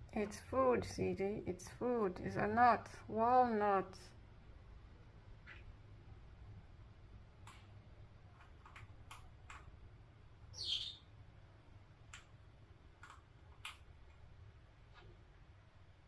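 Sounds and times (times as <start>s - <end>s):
parrot call: 10.6s - 11.1s.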